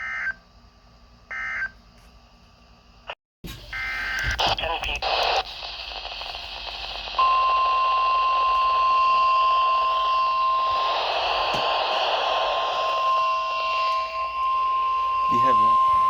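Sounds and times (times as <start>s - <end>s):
radio static hiss: 3.6s - 8.9s, 9.8s - 16.0s
steady alarm beep: 7.2s - 16.0s.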